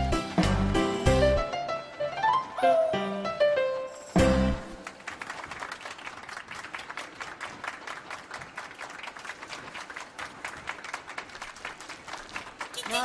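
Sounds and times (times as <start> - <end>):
applause: 4.6 - 13.0.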